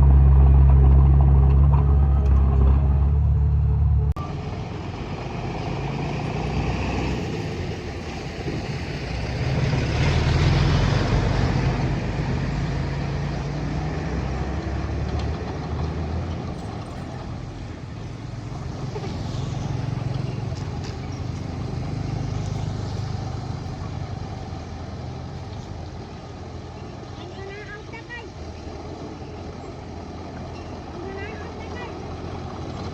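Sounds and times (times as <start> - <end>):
heavy machine engine running: 0.0 - 32.9.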